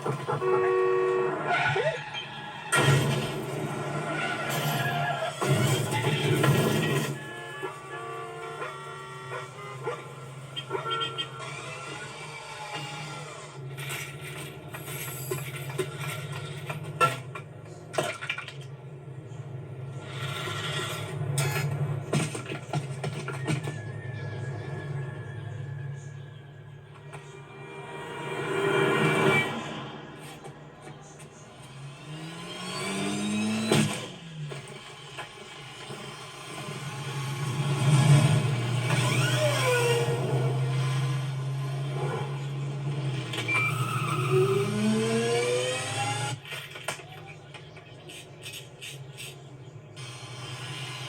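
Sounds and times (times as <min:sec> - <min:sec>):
sharp clanks and scrapes: 0:12.8 - 0:18.7, 0:20.0 - 0:24.0
engine revving: 0:19.2 - 0:46.7.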